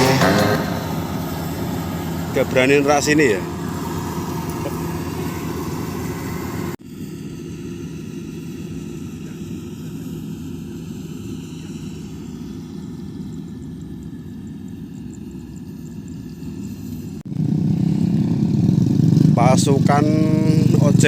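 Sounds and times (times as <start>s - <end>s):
engine running steadily: 0.0s - 21.0s.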